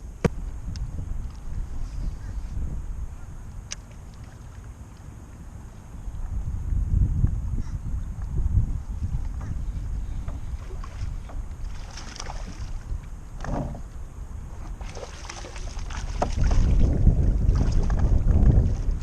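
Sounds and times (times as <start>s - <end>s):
wind buffeting microphone: 0.0s - 4.4s, 5.4s - 19.0s
water splashing against kayak: 8.6s - 19.0s.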